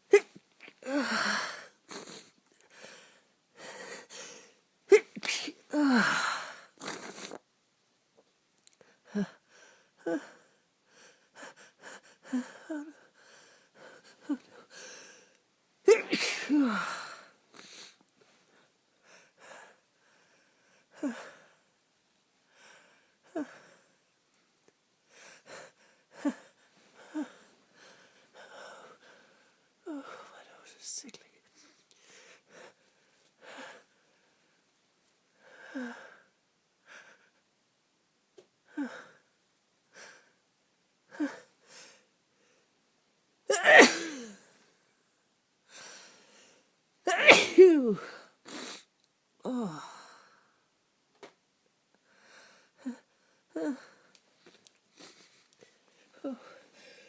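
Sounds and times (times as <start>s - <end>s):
person sneezing: 0.1s - 1.0s, 4.9s - 7.4s, 15.9s - 17.0s, 43.5s - 44.4s, 47.1s - 48.9s
wheezy in-breaths: 0.1s - 7.4s, 8.8s - 15.4s, 52.0s - 57.0s.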